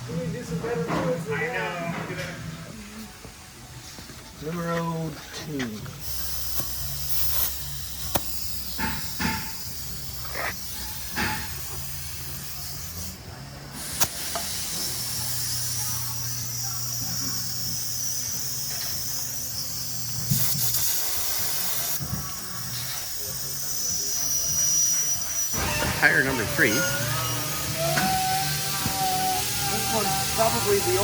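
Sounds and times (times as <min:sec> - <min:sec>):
compressed air hissing: 0:06.0 - 0:31.0
low machine hum: 0:25.6 - 0:31.0.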